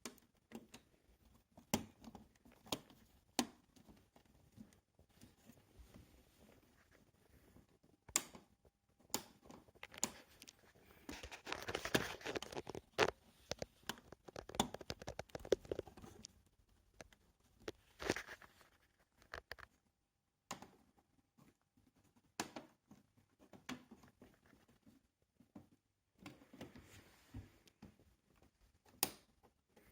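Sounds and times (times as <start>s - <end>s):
plastic scraping and rattling: 9.3s - 19.8s.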